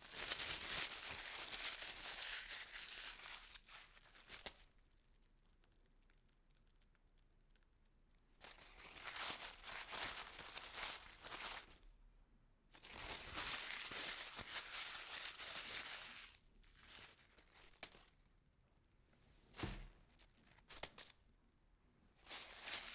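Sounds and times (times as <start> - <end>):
paper crumpling: 12.9 - 18.2.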